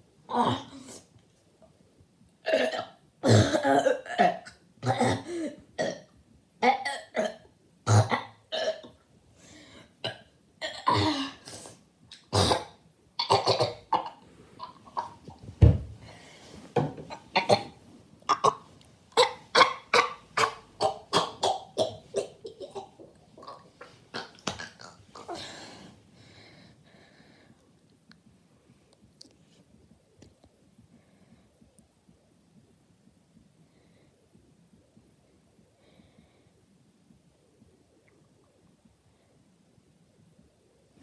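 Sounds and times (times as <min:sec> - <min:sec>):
person burping: 0:17.1 - 0:25.6.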